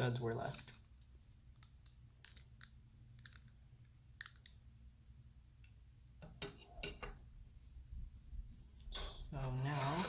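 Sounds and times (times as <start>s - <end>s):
plastic bricks clicking: 1.6s - 3.5s.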